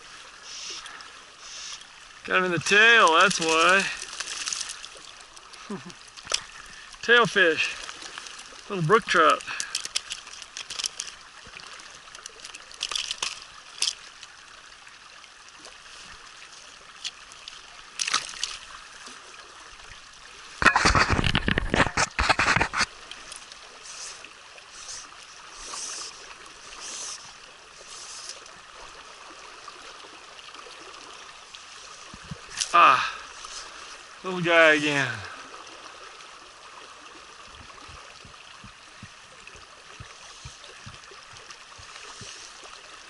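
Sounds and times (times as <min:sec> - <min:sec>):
stream flowing: 0:00.0 - 0:43.0
water splashing: 0:00.0 - 0:43.0.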